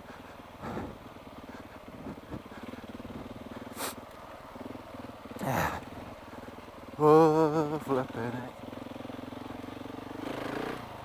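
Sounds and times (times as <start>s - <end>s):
breathy exhalations: 0.0s - 4.1s, 5.4s - 6.8s
motorcycle engine running at low revs: 0.0s - 11.0s.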